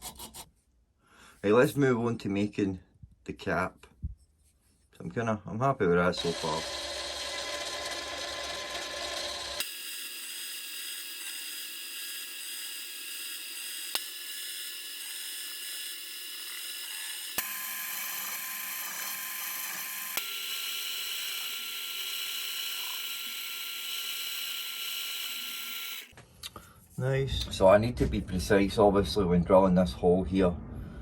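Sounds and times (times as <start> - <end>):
lathe motor whining: 6.2 - 26.1.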